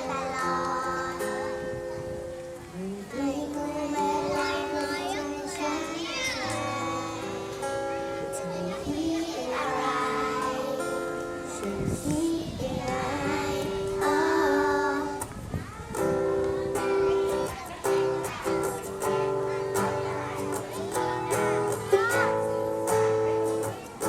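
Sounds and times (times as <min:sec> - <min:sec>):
children singing: 0:00.0 - 0:01.9, 0:02.7 - 0:15.4, 0:16.1 - 0:24.0.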